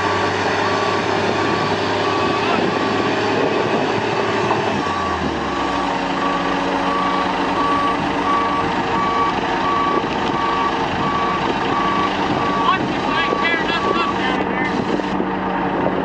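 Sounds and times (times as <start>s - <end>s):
heavy machinery running: 0.0s - 16.0s
backup alarm beeping: 6.3s - 14.4s.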